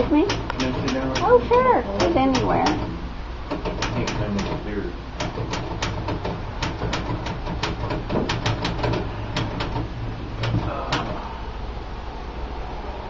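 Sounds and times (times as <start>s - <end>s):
manual typewriter key strikes: 0.0s - 1.4s, 3.5s - 4.6s, 5.2s - 11.1s.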